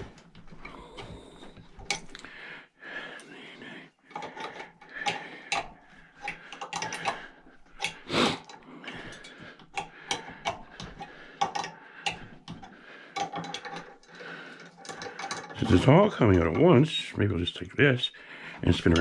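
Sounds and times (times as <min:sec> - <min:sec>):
wrench clicking and scraping on metal: 0:04.1 - 0:16.7.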